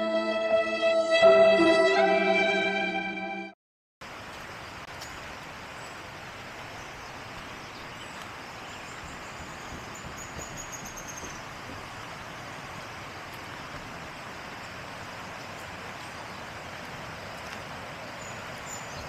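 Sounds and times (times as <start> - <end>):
river water rushing: 11.4 - 19.0.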